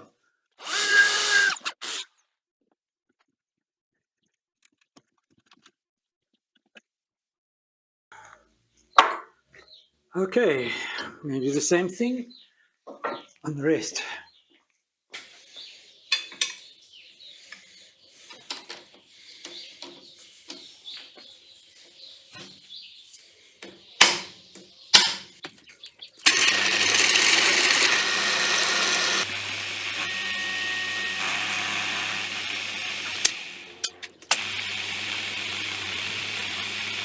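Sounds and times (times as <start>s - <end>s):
electric drill drilling: 0.6s - 2.0s, 24.0s - 24.3s, 26.2s - 37.0s.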